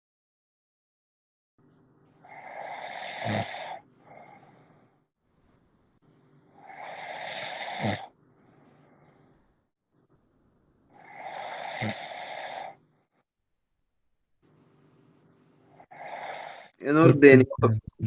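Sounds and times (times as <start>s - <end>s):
man snoring heavily: 2.2s - 4.8s, 6.6s - 8.2s, 11.0s - 12.8s, 15.8s - 16.8s
soft breath: 2.3s - 5.1s, 6.5s - 9.6s.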